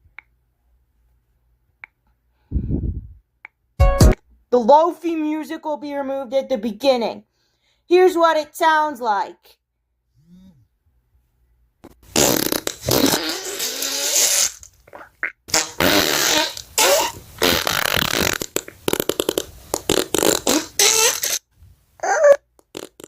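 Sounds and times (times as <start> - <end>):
fart sound effect: 11.8 - 21.4, 22.7 - 23.0.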